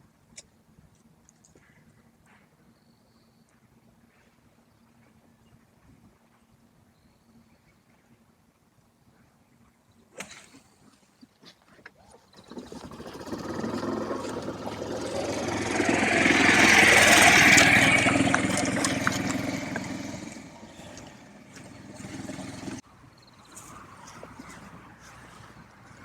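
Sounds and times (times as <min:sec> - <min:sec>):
vehicle engine passing by: 0:12.4 - 0:22.8.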